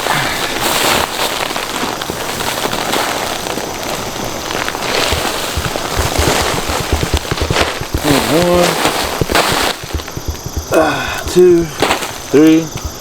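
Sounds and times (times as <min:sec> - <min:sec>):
soil and fabric crackling: 0:00.0 - 0:13.0
dull low thumps: 0:05.1 - 0:13.0.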